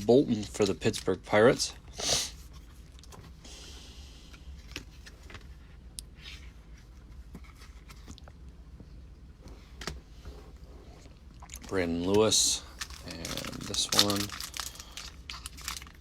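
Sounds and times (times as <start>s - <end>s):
low steady hum: 0.0s - 16.0s
soft rustle of cards: 4.2s - 16.0s.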